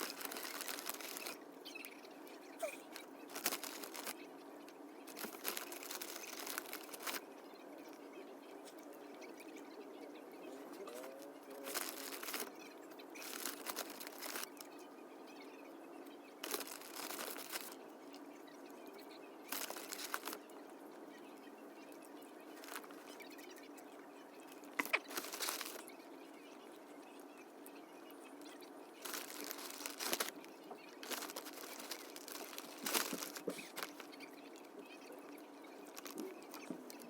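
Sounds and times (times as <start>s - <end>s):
crunching while eating: 0.0s - 1.4s, 2.6s - 4.2s, 5.1s - 7.2s, 10.9s - 12.5s, 13.2s - 14.6s, 16.4s - 17.8s, 19.5s - 20.4s, 24.6s - 25.8s, 28.5s - 30.4s, 31.0s - 34.2s, 35.8s - 37.0s.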